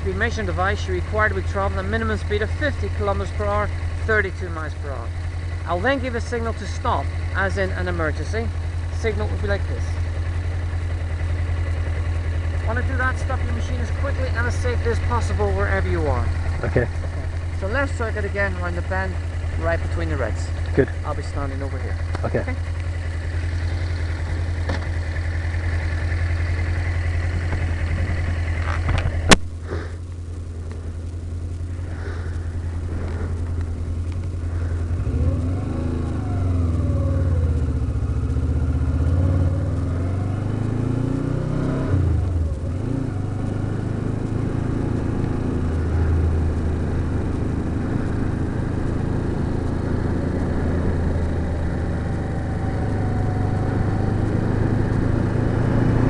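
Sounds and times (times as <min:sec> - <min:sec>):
motorcycle engine: 0:00.0 - 0:56.0
sharp click: 0:28.6 - 0:29.6.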